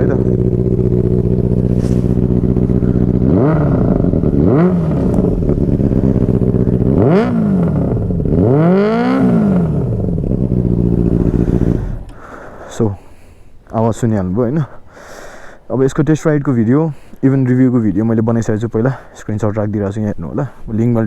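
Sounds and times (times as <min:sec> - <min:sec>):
motorcycle engine idling and revving: 0:00.0 - 0:14.0.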